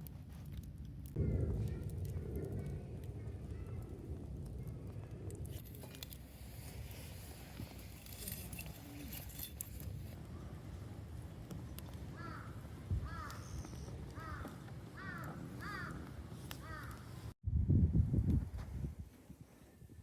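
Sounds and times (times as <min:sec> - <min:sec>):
low rumble: 0:00.6 - 0:08.2
crow cawing: 0:12.1 - 0:17.1.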